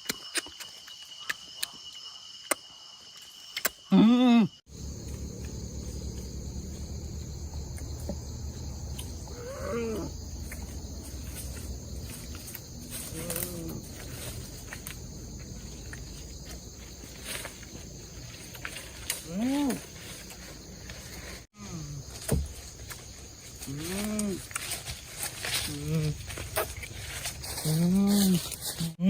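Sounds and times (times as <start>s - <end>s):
insects chirring: 0.0s - 29.0s
low steady rumble: 4.7s - 17.1s.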